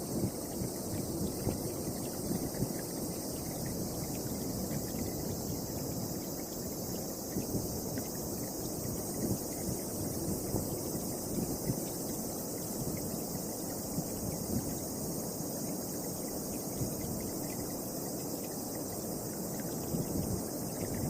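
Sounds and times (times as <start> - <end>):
wind buffeting microphone: 0.0 - 12.1, 19.6 - 21.0
crickets chirping: 0.0 - 21.0.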